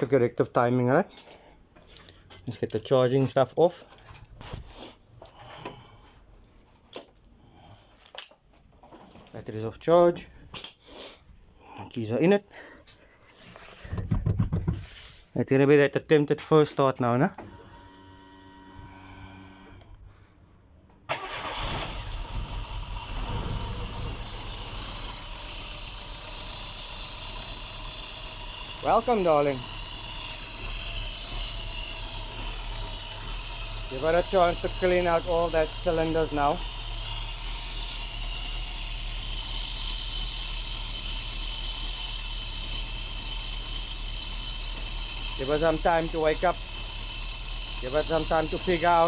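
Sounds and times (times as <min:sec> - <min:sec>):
car engine starting and running: 0:21.1 - 0:49.0.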